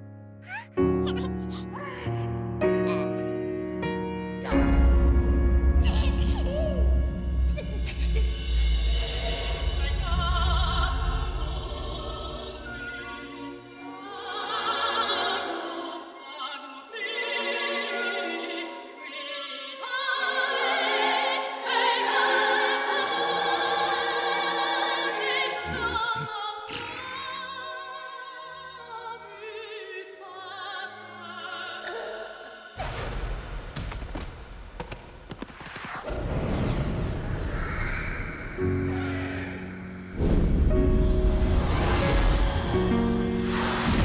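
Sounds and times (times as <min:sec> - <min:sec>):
orchestral accompaniment: 0:00.8 - 0:16.0, 0:38.7 - 0:44.0
operatic singing: 0:04.4 - 0:32.8.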